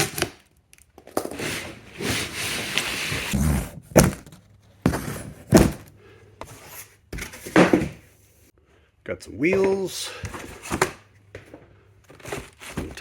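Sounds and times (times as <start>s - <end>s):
cardboard scraping and rustling: 1.2s - 8.1s, 12.1s - 13.0s.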